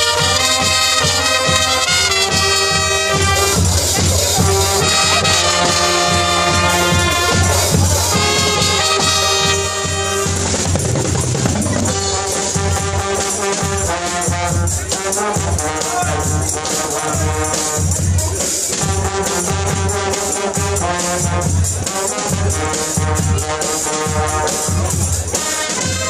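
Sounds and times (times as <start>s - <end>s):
shaker-like percussion: 0.0s - 26.0s
trumpets playing a melody: 0.0s - 26.0s
steady low beat: 2.4s - 14.7s.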